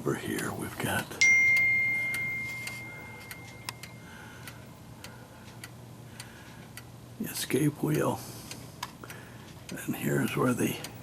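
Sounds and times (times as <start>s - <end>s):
clock ticking: 0.0s - 11.0s
clock hammer striking bell: 1.2s - 4.1s.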